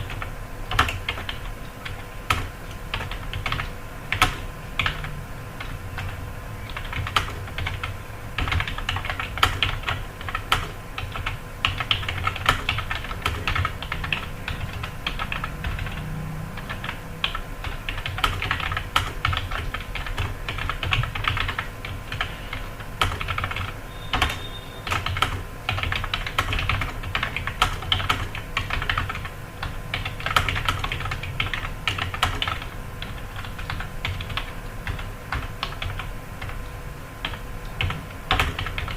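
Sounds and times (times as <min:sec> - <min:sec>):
fast typing on keyboard: 0:00.0 - 0:36.6, 0:37.2 - 0:38.9.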